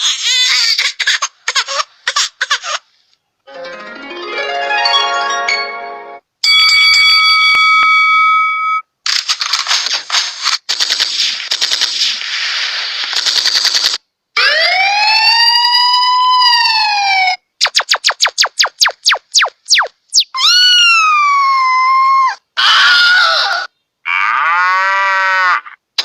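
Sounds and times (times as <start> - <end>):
ringing chord: 3.5 - 6.3.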